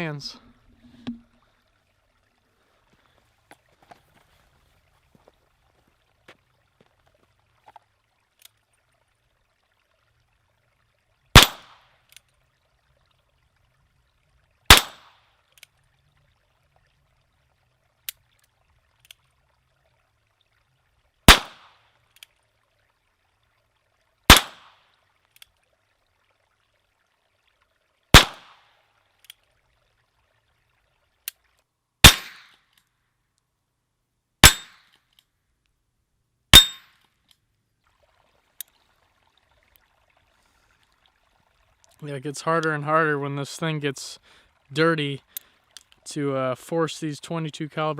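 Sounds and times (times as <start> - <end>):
revolver gunshots: 11.4 - 11.8, 14.7 - 15.2, 21.3 - 21.7, 24.3 - 24.8, 28.1 - 28.6, 32.0 - 32.5.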